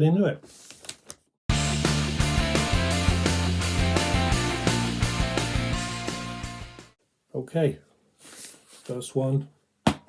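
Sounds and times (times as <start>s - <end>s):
background music with steady beat: 1.5s - 7.0s.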